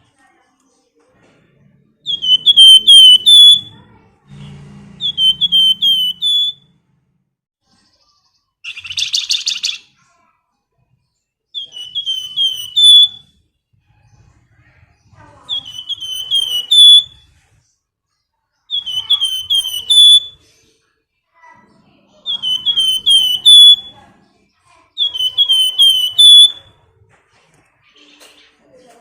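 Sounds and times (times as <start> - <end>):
songbird whistling: 2.0 - 3.8, 5.0 - 6.7, 11.6 - 13.4, 15.5 - 17.4, 18.7 - 20.5, 22.2 - 24.0, 25.0 - 26.8.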